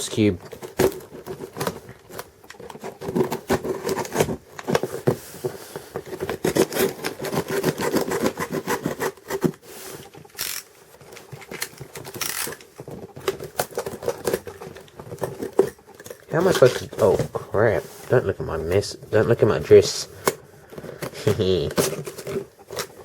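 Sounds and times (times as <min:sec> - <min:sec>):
handling knocks and clicks: 0:00.2 - 0:17.5, 0:19.6 - 0:23.0
paper and tape tearing: 0:06.3 - 0:09.5.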